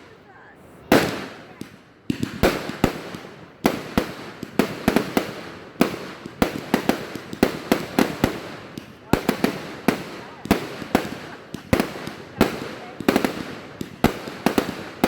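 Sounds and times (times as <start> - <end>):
fireworks bangs: 0.0 - 15.0.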